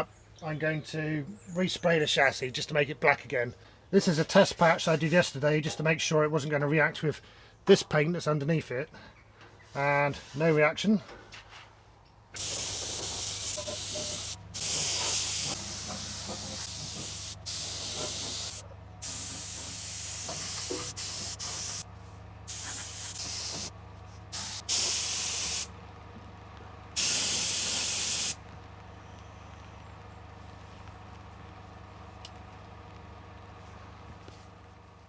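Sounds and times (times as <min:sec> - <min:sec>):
spray paint hissing: 0:12.4 - 0:21.9, 0:22.5 - 0:23.7, 0:24.3 - 0:25.7, 0:27.0 - 0:28.4.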